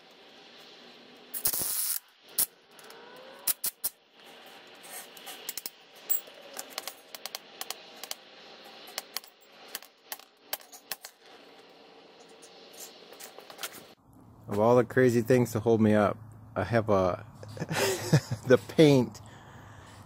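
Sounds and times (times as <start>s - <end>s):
metallic clicks of hand tools: 1.4s - 4.0s.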